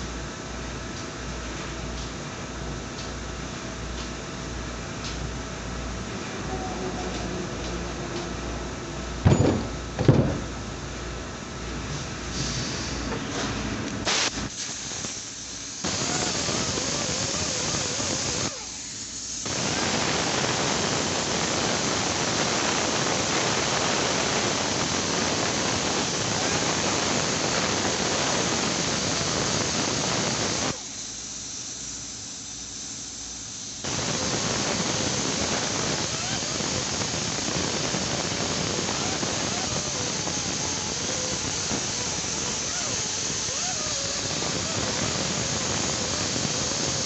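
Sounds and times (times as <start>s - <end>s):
high-pressure jet hissing: 14.1s - 47.0s.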